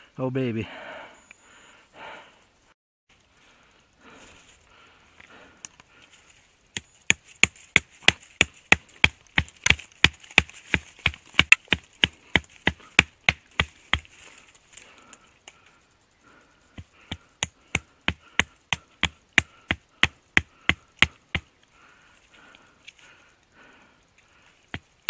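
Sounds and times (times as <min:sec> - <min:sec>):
knife chopping woody stem: 0:06.8 - 0:14.1, 0:16.8 - 0:21.5.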